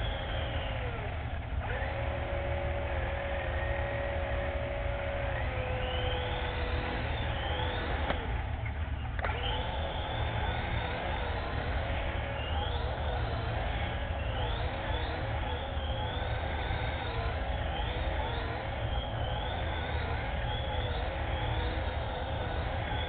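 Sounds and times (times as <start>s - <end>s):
rc helicopter motor whine: 0.0s - 23.0s
click: 6.4s - 9.7s.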